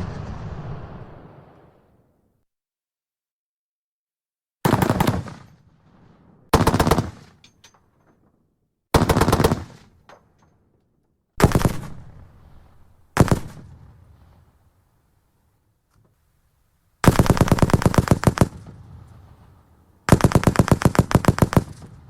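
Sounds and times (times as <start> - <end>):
heavy machine gun bursts: 20.1 - 21.9.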